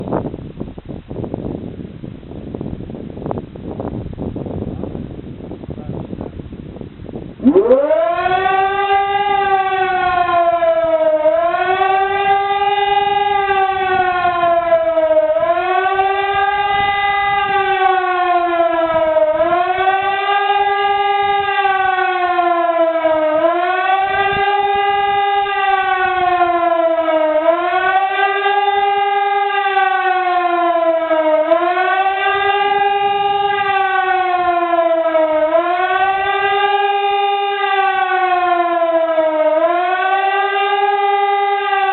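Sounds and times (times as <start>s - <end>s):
electronic siren wailing: 7.4s - 41.9s.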